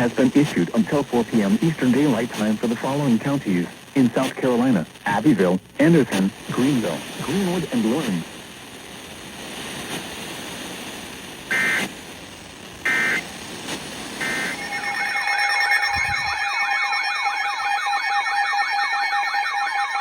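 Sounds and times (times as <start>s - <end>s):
radio static: 0.0s - 8.4s, 11.5s - 12.1s, 12.8s - 20.0s
harsh digital data tone bursts: 11.5s - 11.9s, 12.9s - 13.3s, 14.2s - 20.0s
two-tone attention tone: 12.9s - 13.2s, 14.2s - 20.0s
warbling siren-like sweep: 14.2s - 20.0s.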